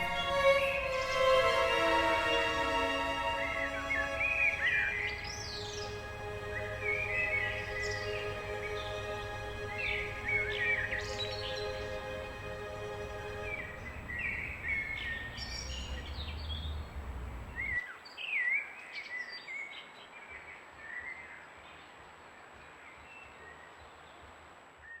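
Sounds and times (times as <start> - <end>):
sustained music tones: 0.0 - 17.8
low rumble: 4.5 - 17.8
birds singing and calling: 13.4 - 17.8.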